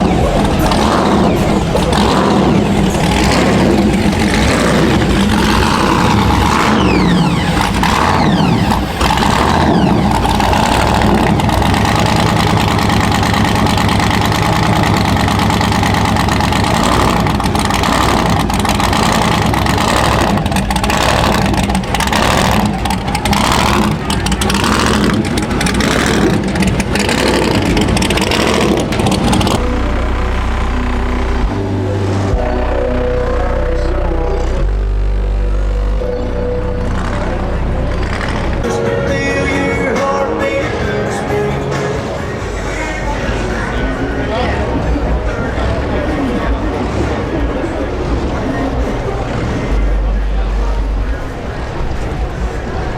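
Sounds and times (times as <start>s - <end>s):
people's voices: 0.0s - 52.9s
truck engine revving: 0.0s - 52.9s.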